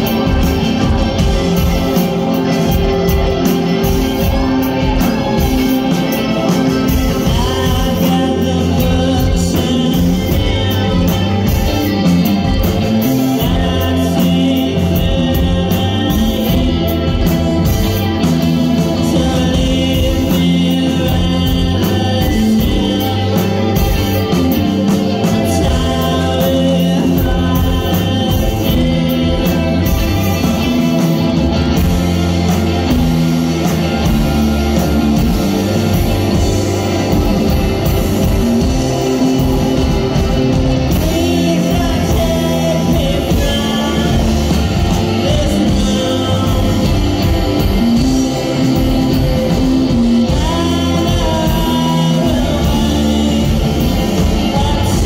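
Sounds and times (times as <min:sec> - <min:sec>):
guitar: 0:00.0 - 0:55.0
lead vocal singing: 0:00.0 - 0:55.0
live band playing: 0:00.0 - 0:55.0.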